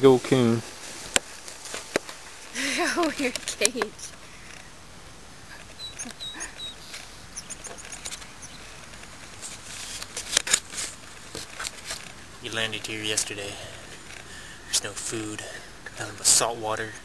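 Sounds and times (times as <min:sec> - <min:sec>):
rustling: 0:00.1 - 0:04.7, 0:05.4 - 0:14.5
faint bird chirps: 0:05.5 - 0:08.8.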